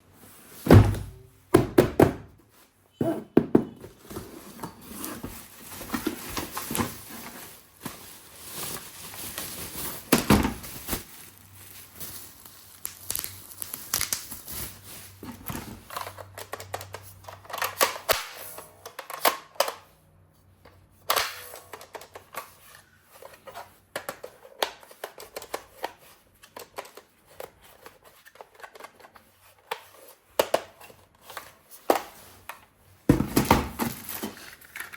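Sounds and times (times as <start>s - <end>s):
cardboard and plastic tearing: 4.8s - 16.2s, 33.3s - 34.9s.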